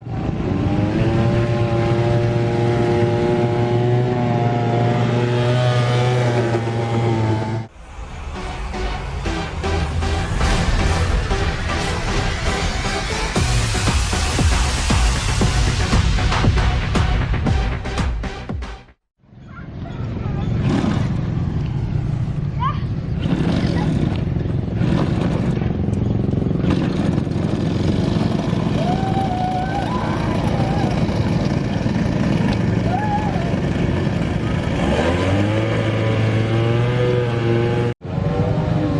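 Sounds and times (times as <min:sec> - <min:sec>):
small engine running at high speed: 0:00.0 - 0:07.7, 0:23.1 - 0:38.9.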